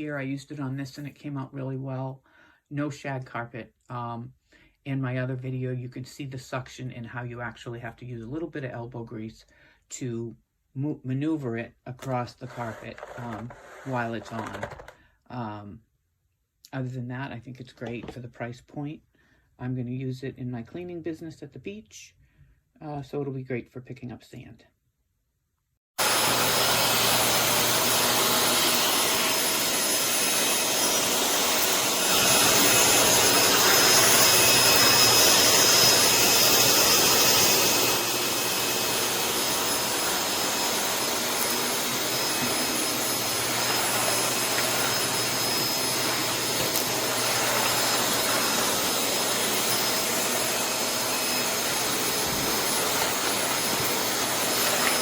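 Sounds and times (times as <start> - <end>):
vacuum cleaner running: 12.0 - 15.0, 26.0 - 55.0.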